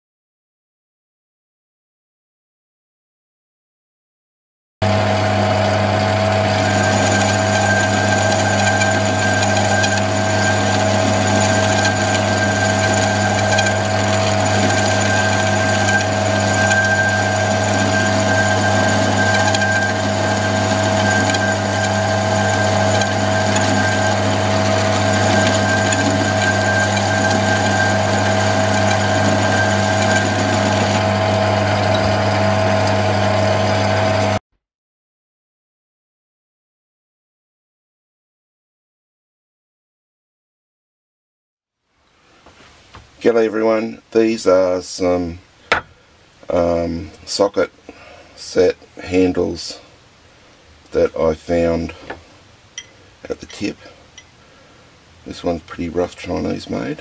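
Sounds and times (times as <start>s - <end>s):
small machine humming: 4.8s - 34.4s.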